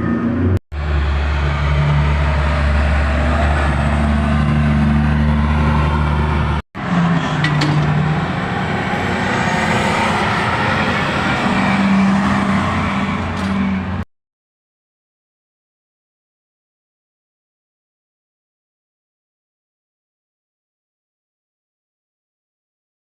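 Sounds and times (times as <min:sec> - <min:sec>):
large diesel engine running: 0:00.0 - 0:14.0.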